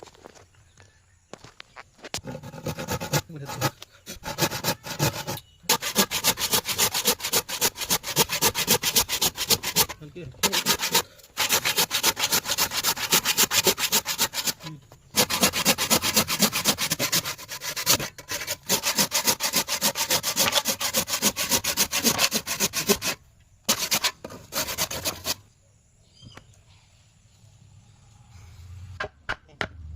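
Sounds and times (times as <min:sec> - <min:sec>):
hand sanding wood: 0:02.2 - 0:25.4.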